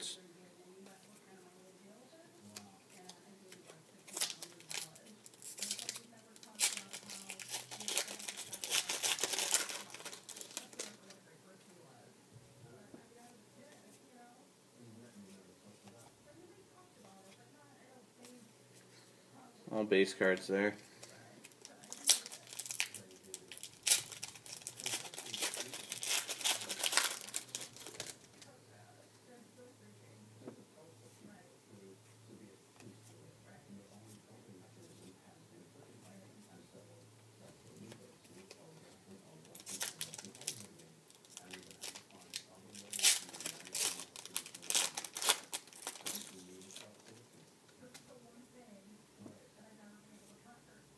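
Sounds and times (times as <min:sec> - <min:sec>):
card pack wrapper tearing and crinkling: 0:04.0 - 0:11.2, 0:21.4 - 0:28.4, 0:39.4 - 0:47.2.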